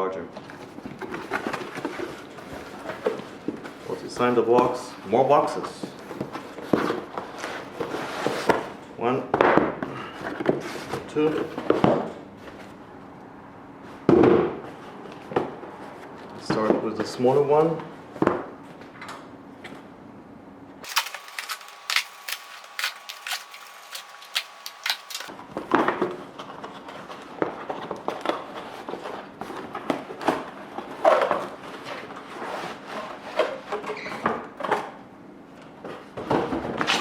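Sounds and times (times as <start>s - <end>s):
cardboard box being opened: 20.8s - 25.3s
rustling of packaging: 20.8s - 25.3s.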